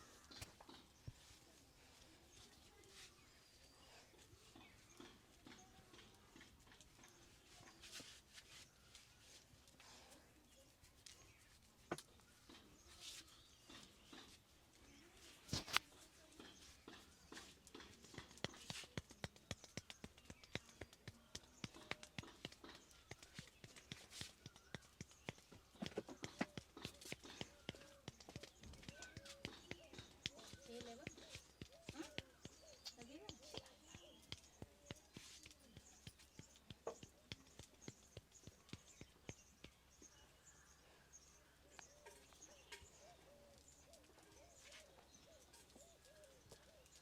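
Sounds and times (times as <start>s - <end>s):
hands tapping on a head: 16.5s - 40.2s.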